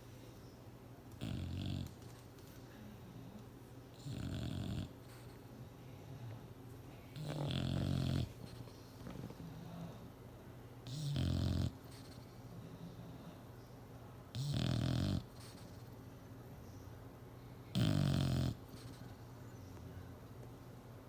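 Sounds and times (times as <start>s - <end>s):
dog snoring: 1.2s - 2.0s, 3.9s - 5.4s, 7.2s - 9.9s, 10.8s - 12.4s, 14.3s - 16.0s, 17.7s - 19.2s
dog breathing softly: 10.9s - 13.6s, 14.4s - 16.8s, 17.8s - 19.4s.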